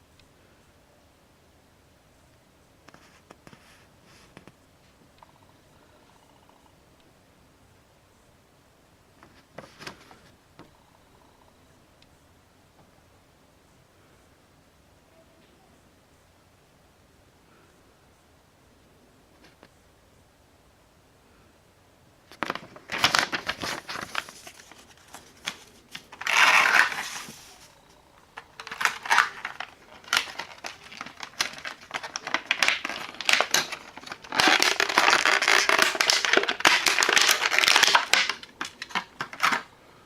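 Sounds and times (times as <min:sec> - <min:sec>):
plastic packaging crinkling: 0:22.3 - 0:39.7.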